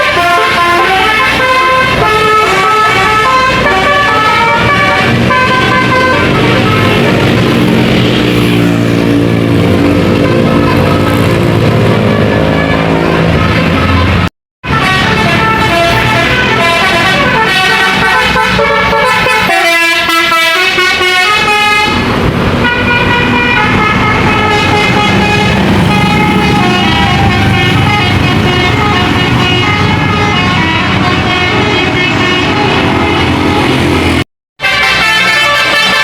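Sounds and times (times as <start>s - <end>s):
multi-tone air horn tune: 0.0s - 8.8s, 10.0s - 36.0s.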